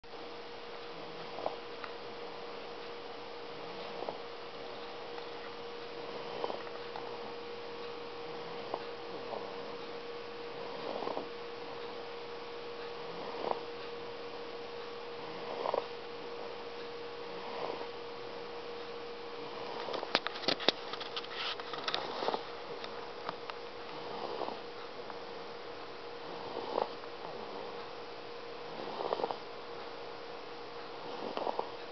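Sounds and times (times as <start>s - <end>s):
steady background hum: 0.0s - 31.9s
soft snoring: 0.9s - 2.6s, 3.5s - 7.4s, 8.2s - 9.8s, 10.5s - 12.0s, 13.0s - 13.8s, 15.2s - 16.6s, 17.3s - 18.0s, 19.4s - 20.1s, 21.9s - 22.5s, 23.9s - 25.1s, 26.2s - 27.8s, 28.6s - 29.6s, 30.9s - 31.9s.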